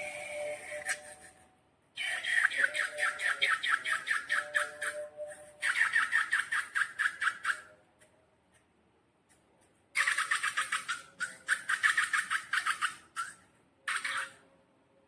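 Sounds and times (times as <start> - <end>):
squeaky slime squishing: 10.0 - 14.4.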